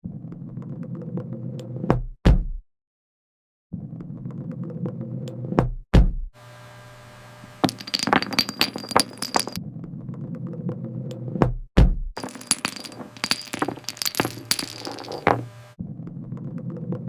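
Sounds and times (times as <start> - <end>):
clatter of cubes toppling: 7.6 - 9.6, 12.2 - 15.5
heavy ball rolling: 7.6 - 9.6, 12.2 - 15.5.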